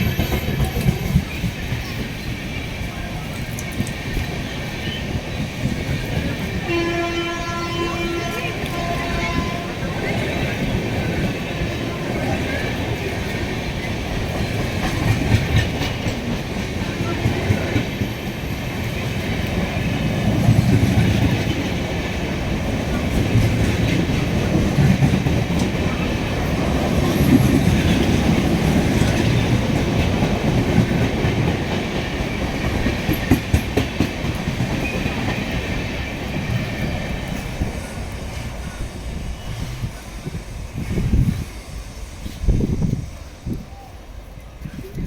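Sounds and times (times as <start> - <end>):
train wheels clattering over rail joints: 8.8 - 41.5.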